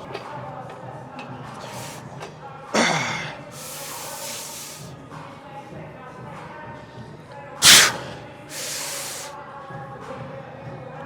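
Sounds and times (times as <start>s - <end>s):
hissing exhale: 1.6s - 2.1s, 2.8s - 4.9s, 7.6s - 9.4s
sharp breath burst: 1.6s - 2.1s, 2.8s - 4.9s, 7.6s - 9.3s
man grunting: 2.8s - 3.4s.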